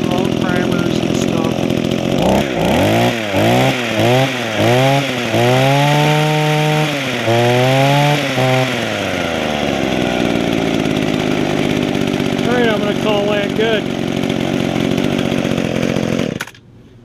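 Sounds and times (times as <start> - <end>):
hedge trimmer engine revving: 0.0 - 16.6.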